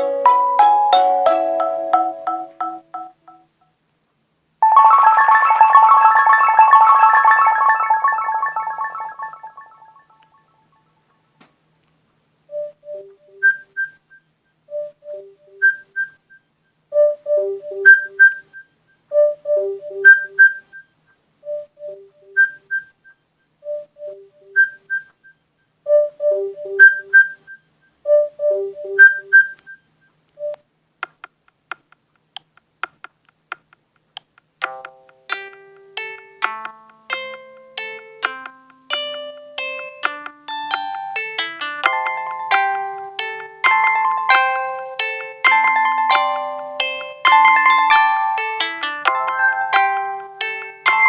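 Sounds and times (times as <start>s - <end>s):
plucked-string alarm tone: 4.6s - 10.2s, 43.6s - 51.0s
electronic alarm tone: 4.6s - 10.5s, 49.1s - 51.0s.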